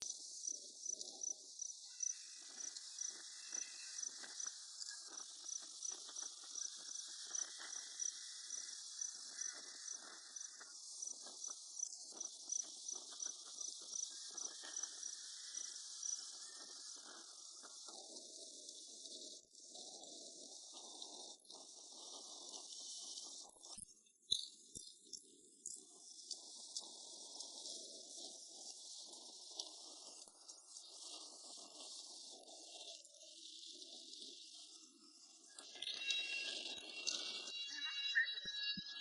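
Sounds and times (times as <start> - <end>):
insect-like high chirping: 0.0 - 17.8, 30.0 - 39.0.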